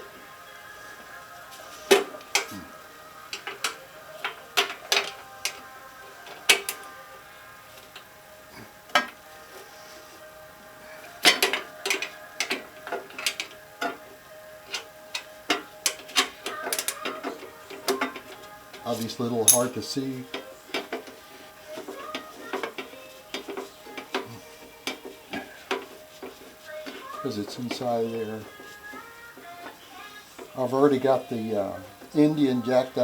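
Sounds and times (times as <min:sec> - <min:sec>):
ratchet wrench clicking: 0:19.0 - 0:19.8.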